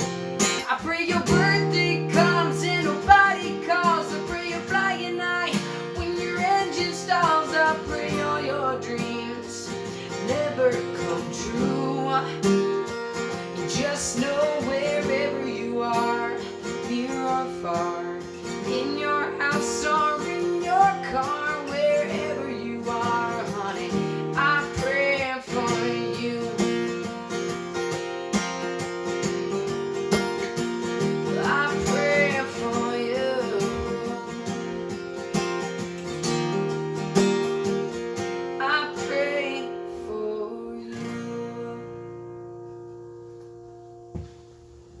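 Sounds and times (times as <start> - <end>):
acoustic guitar strumming: 0.0 - 45.0.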